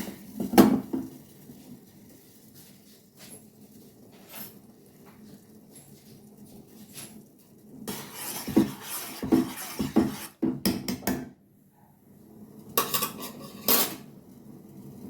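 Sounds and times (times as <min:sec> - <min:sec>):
metal utensils scraping a pot: 0:07.9 - 0:10.4, 0:12.8 - 0:14.1.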